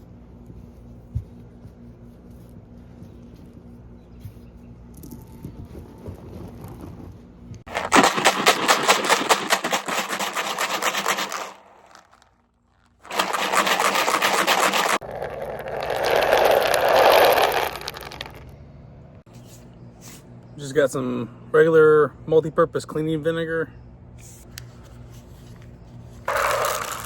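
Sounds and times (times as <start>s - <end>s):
steel balls rattling together: 7.7s - 18.5s, 26.3s - 27.0s.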